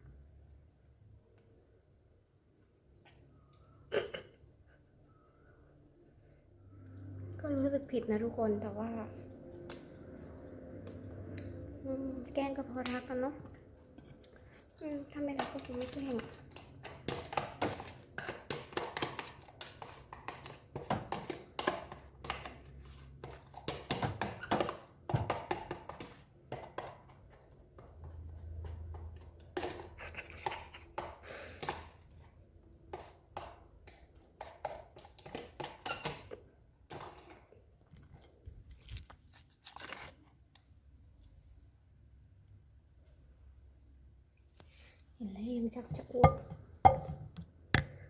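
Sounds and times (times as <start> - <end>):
food and packaging rustles: 37.0 - 40.4.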